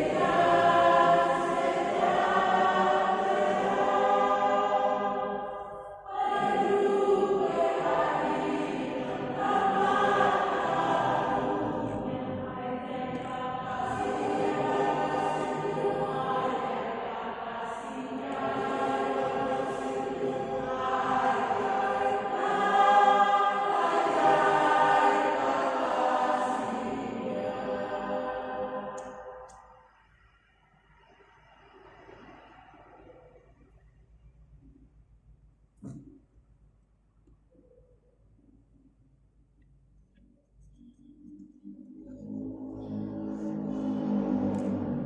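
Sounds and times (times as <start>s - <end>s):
choir singing held phrases: 0.0s - 29.8s, 41.9s - 45.0s.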